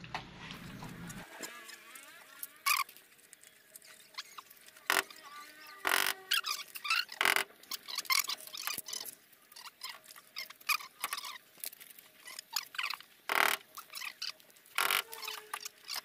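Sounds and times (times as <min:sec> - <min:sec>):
cable rustles clicks and squeaks: 0:00.4 - 0:16.0
loud scraping bursts: 0:03.9 - 0:09.1.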